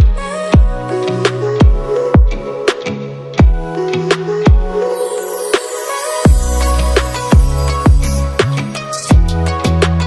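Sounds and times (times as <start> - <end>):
electronic music with kick drum: 0.0 - 10.0.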